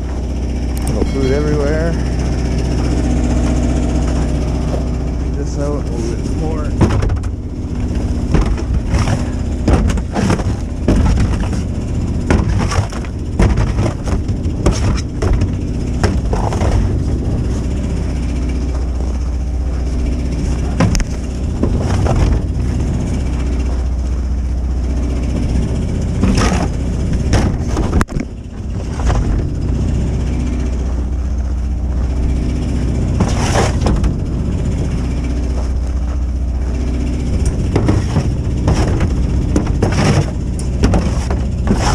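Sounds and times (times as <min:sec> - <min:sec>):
engine running: 0:00.0 - 0:41.9
knocks and clattering: 0:06.4 - 0:17.9, 0:18.6 - 0:23.8, 0:25.4 - 0:30.0, 0:33.1 - 0:36.2, 0:37.2 - 0:41.9.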